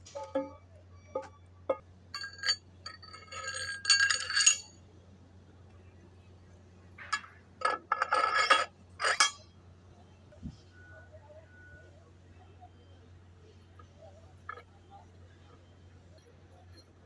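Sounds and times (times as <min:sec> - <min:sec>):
metal parts clinking and clanking: 0:00.0 - 0:04.7, 0:07.0 - 0:09.4.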